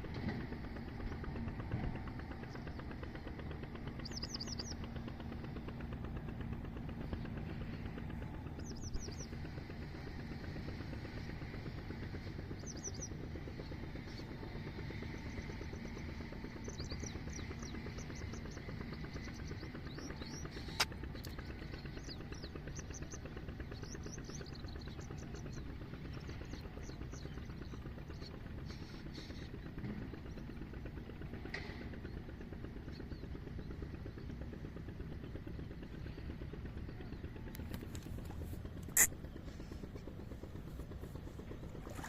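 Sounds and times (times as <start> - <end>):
steady low rumble: 32.0 - 42.0.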